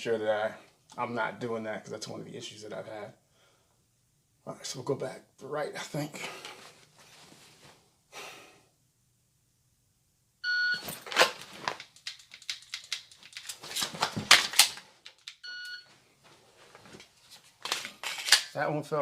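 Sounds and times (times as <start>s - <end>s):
clothing rustle: 6.3s - 7.9s, 10.7s - 11.9s, 13.3s - 15.2s, 15.8s - 18.4s.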